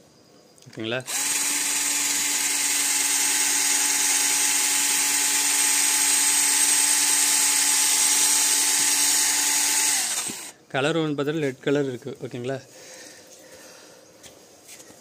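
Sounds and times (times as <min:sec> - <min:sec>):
cordless drill motor whine: 0:01.0 - 0:10.6.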